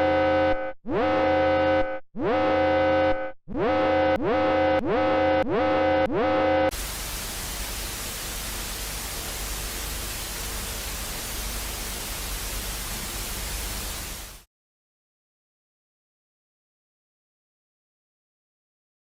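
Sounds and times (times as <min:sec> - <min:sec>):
pulsing alarm tone: 0:00.0 - 0:06.7
loud white noise static: 0:06.7 - 0:14.4.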